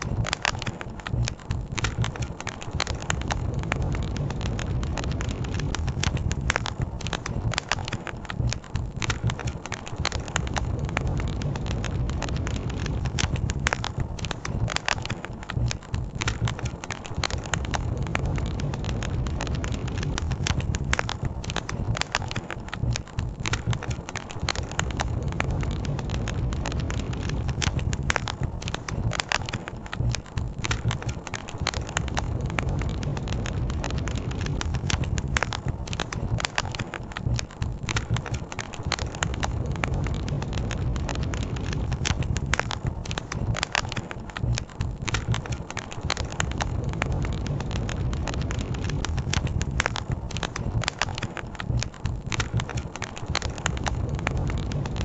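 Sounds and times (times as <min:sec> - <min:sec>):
campfire crackling and popping: 0:00.0 - 0:55.0
steady low rumble: 0:00.0 - 0:55.0.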